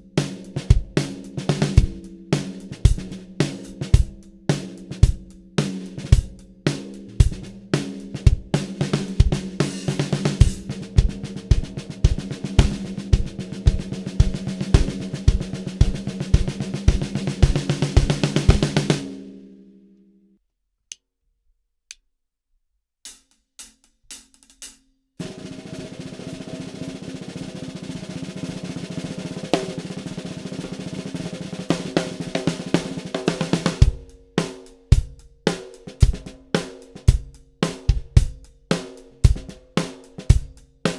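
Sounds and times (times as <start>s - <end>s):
bass drum beat: 0.0s - 19.0s, 29.0s - 36.5s, 37.1s - 39.6s, 40.3s - 40.9s
snare drum playing: 5.6s - 19.2s, 25.2s - 40.9s.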